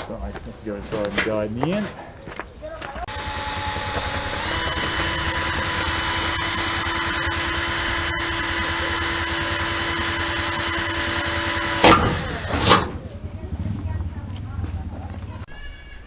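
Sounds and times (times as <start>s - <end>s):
power drill motor whining: 3.1s - 13.2s.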